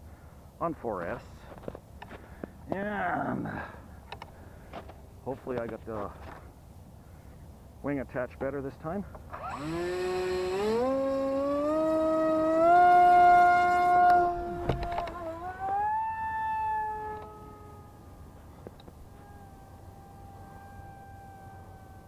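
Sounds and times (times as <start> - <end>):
model plane electric motor whining: 9.3 - 22.0.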